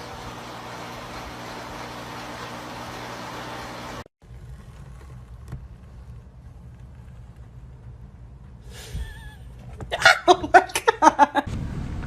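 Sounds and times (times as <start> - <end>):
car engine and road noise: 4.2 - 8.7, 11.5 - 12.0
low rumble: 11.5 - 12.0.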